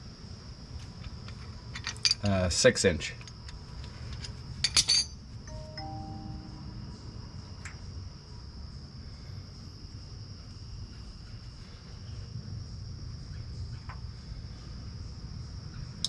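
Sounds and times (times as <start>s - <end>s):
high-pitched insect trill: 0.0s - 16.0s
low background rumble: 3.2s - 16.0s.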